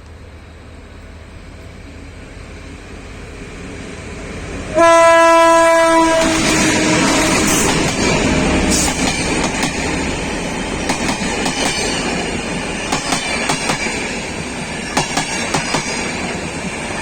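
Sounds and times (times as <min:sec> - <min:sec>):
diesel locomotive rumble: 0:00.0 - 0:17.0
locomotive horn blast: 0:04.7 - 0:08.0
wheels clattering over rail joints: 0:06.1 - 0:16.2.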